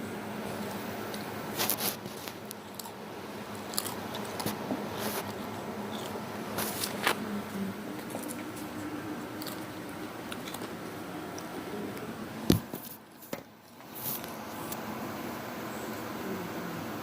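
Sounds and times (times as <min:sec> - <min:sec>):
quiet chewing: 0:00.4 - 0:14.8
crunching potato chips: 0:00.5 - 0:07.2, 0:08.0 - 0:11.6.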